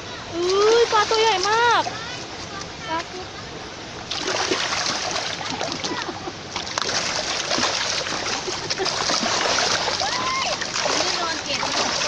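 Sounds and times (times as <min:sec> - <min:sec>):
fish splashing in water: 0:04.1 - 0:12.0.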